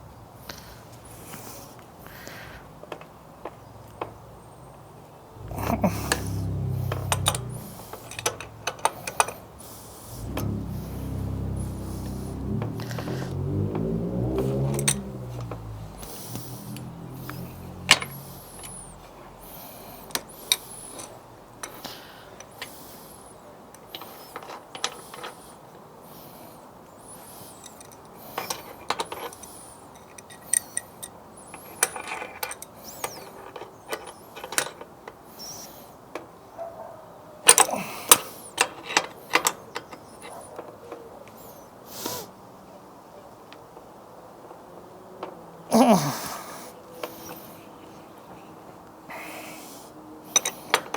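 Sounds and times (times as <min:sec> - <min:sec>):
spanner clicking on metal: 0:06.0 - 0:09.4, 0:27.6 - 0:34.7.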